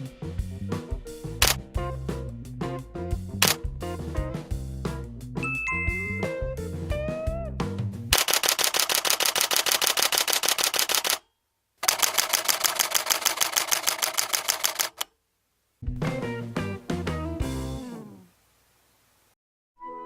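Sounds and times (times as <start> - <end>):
music: 0.0 - 8.1, 15.8 - 18.3, 19.8 - 20.0
musical jingle: 5.4 - 6.7
camera shutter burst clacks: 8.1 - 11.2, 11.8 - 15.1.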